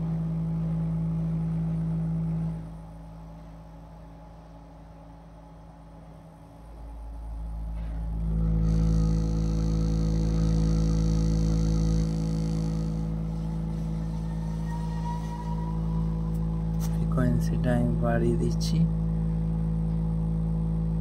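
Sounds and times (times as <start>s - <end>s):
low subwoofer test tone: 0.0s - 21.0s
higher buzzing: 6.8s - 21.0s.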